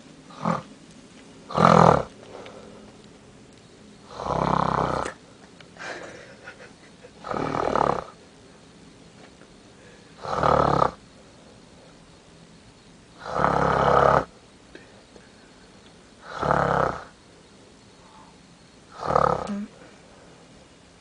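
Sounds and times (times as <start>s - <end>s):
faint breathing: 2.2s - 3.1s, 9.7s - 10.2s, 14.7s - 15.8s, 18.0s - 18.4s
woman snoring loudly: 4.1s - 5.1s, 7.2s - 8.2s, 10.2s - 11.0s, 13.2s - 14.3s, 16.2s - 17.1s, 18.9s - 19.7s.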